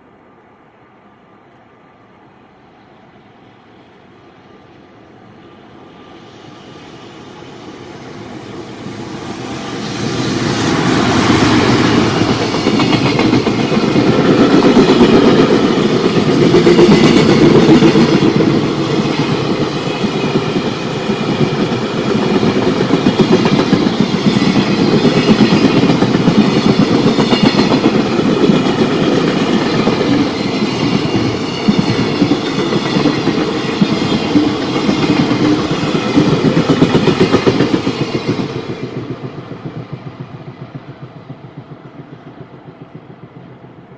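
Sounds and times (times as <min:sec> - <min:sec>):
freight train passing: 0:00.0 - 0:43.9.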